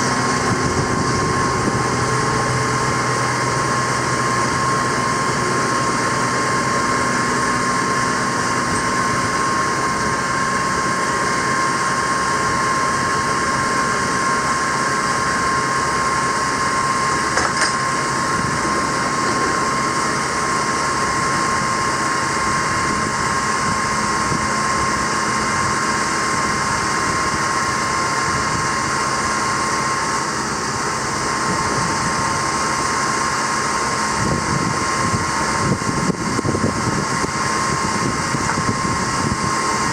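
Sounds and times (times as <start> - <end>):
high-pitched whine: 0.0 - 27.3
diesel truck engine running: 0.0 - 39.9.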